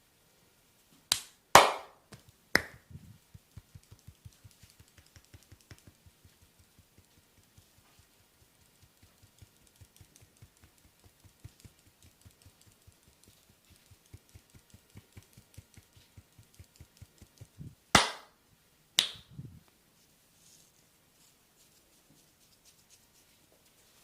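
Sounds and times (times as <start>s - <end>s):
rapid tapping on a back: 3.2s - 18.3s.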